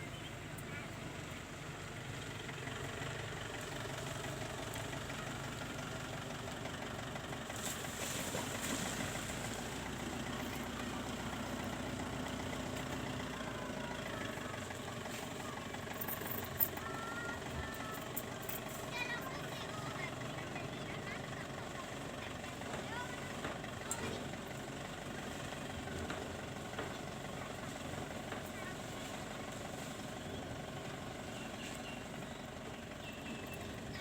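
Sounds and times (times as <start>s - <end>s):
vehicle engine drone: 0.0s - 34.0s.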